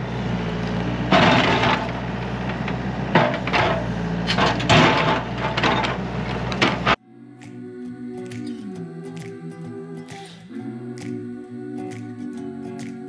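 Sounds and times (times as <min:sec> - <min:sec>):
excavator engine running: 0:00.0 - 0:07.0
harsh metal clanking: 0:01.1 - 0:07.0.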